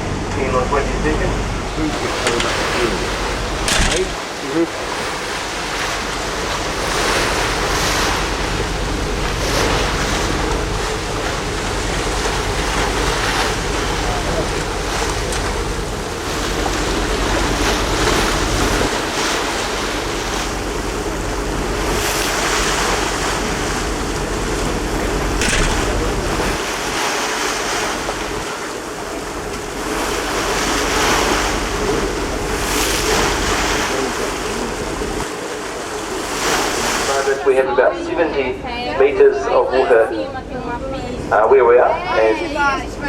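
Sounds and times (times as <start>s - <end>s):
faint boat engine hum: 0.0s - 43.0s
waterfall roaring: 1.6s - 5.6s.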